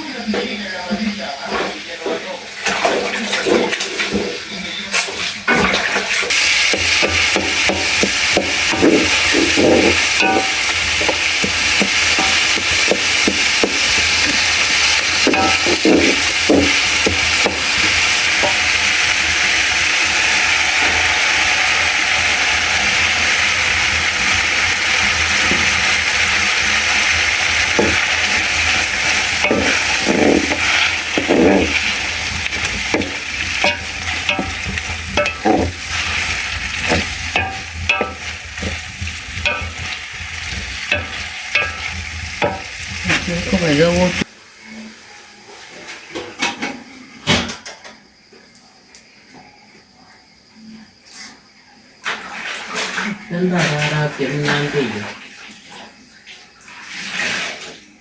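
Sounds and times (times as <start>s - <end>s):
food sizzling in a pan: 1.4s - 44.3s
spoon stirring and scraping: 6.2s - 20.8s, 21.5s - 44.2s.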